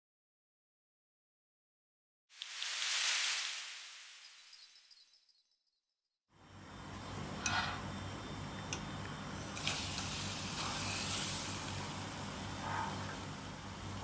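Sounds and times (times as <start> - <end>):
food sizzling in a pan: 2.3 - 4.7, 9.4 - 14.0
steady low hum: 6.4 - 14.0.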